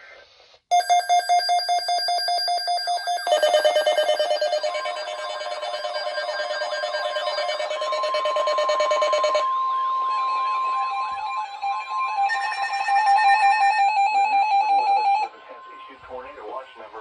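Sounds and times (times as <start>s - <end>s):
pulsing alarm beep: 0.7s - 9.5s
warbling alarm: 0.7s - 15.3s
steady high tone: 0.7s - 15.4s.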